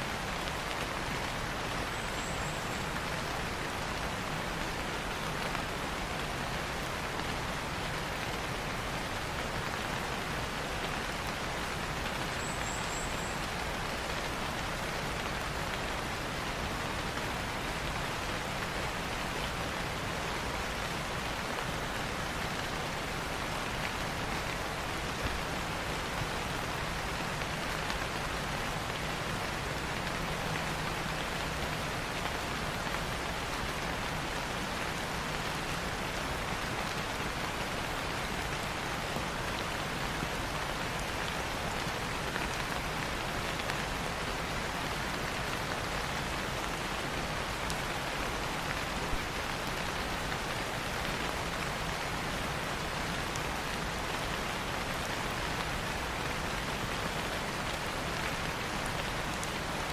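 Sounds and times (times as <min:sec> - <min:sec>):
dense rainfall hissing: 0:00.0 - 0:59.9.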